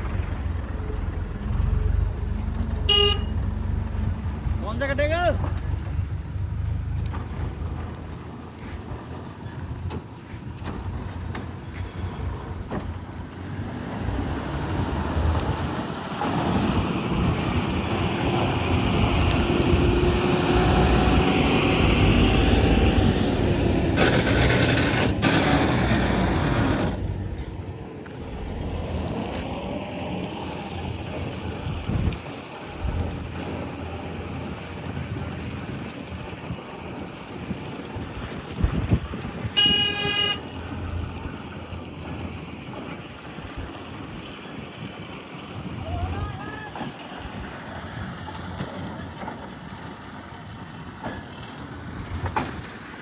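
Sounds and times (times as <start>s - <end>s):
harvesting machine running: 0.0s - 44.6s
wind buffeting microphone: 30.8s - 33.4s, 34.4s - 39.9s.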